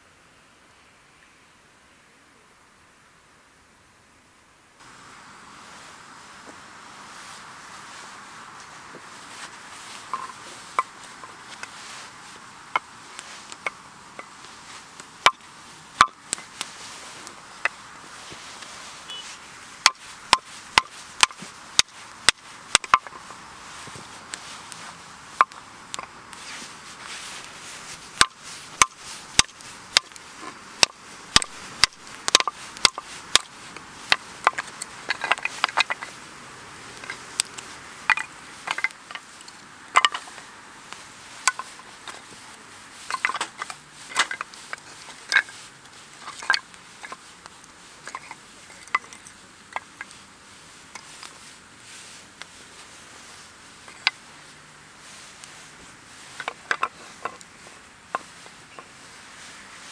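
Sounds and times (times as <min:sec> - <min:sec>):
campfire crackling and popping: 0:04.8 - 0:59.9.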